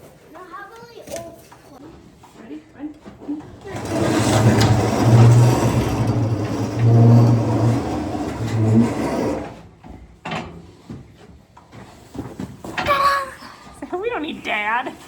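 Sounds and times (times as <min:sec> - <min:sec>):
heavy load scraping along ground: 0:03.6 - 0:10.9
low rumbling hum: 0:03.8 - 0:09.6.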